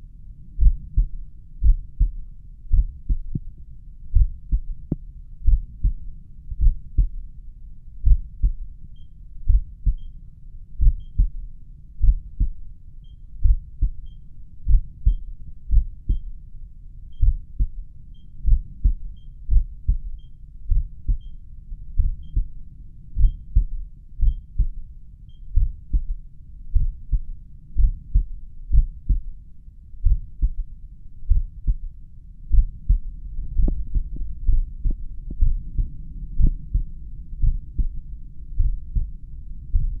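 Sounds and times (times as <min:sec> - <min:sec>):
heartbeat through stethoscope: 0:00.6 - 0:07.3, 0:08.0 - 0:10.2, 0:10.8 - 0:11.4, 0:12.0 - 0:16.4, 0:17.1 - 0:22.6, 0:23.2 - 0:29.4, 0:30.0 - 0:40.0
faint high alarm beeps: 0:09.9 - 0:10.2, 0:10.9 - 0:11.3, 0:14.0 - 0:14.3, 0:18.1 - 0:18.4, 0:19.1 - 0:19.4, 0:20.1 - 0:20.4, 0:21.1 - 0:21.4, 0:22.2 - 0:22.5, 0:23.2 - 0:23.5, 0:24.2 - 0:24.6.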